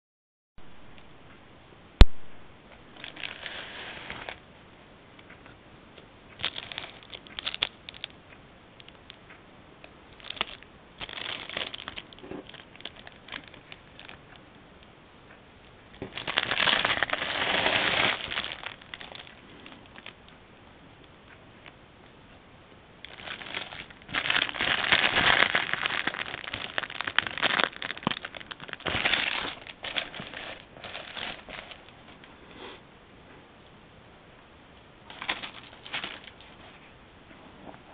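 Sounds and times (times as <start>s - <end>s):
thin plastic crinkling: 2.9s - 4.4s, 6.4s - 8.1s, 10.2s - 14.4s, 16.0s - 20.2s, 23.0s - 32.3s, 35.1s - 36.9s.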